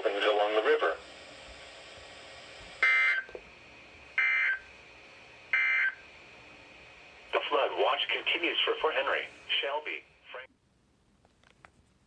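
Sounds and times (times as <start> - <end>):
faint radio background: 0.0 - 1.0, 7.3 - 10.6.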